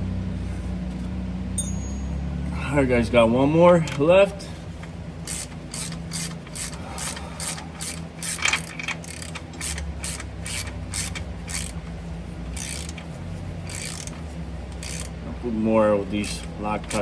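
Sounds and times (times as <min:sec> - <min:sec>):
steady low hum: 0:00.0 - 0:17.0
hand ratchet wrench clicking: 0:05.2 - 0:11.8, 0:12.6 - 0:13.0, 0:13.6 - 0:15.1.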